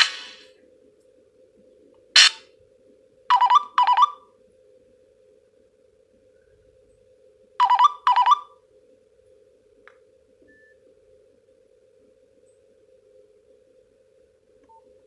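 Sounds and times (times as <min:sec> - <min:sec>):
faint steady hum: 0:00.0 - 0:15.0
phone ringtone buzzy tones: 0:03.3 - 0:04.2, 0:07.6 - 0:08.6.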